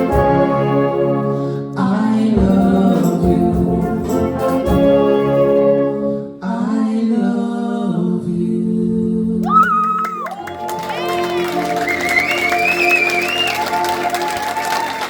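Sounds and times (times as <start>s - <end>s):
live vocal duet with band: 1.3s - 5.6s
audience applause: 9.4s - 15.0s.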